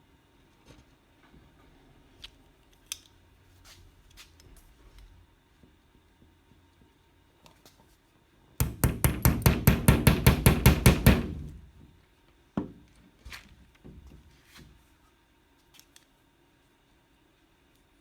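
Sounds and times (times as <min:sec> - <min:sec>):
hammer tapping quickly: 0:08.6 - 0:11.6.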